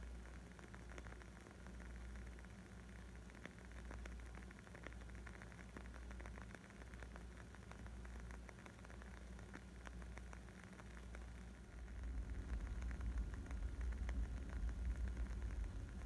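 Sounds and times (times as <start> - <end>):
wood fire crackling: 0.1 - 16.0
low rumble: 11.7 - 16.0.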